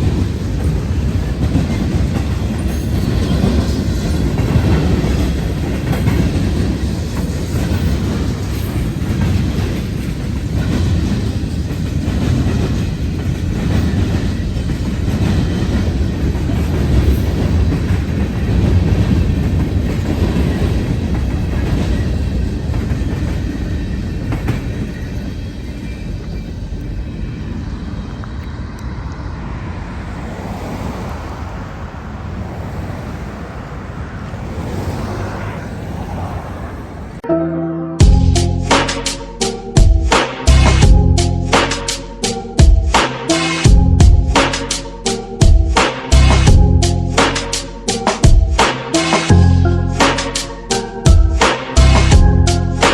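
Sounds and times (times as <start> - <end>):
wheels clicking over rail joints: 0.0 - 27.0
freight train rumbling past: 0.0 - 37.4, 38.0 - 52.9.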